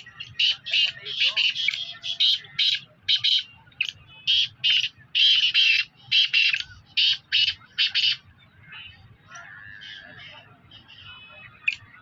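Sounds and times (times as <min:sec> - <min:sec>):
partridges calling harshly: 0:00.0 - 0:08.2.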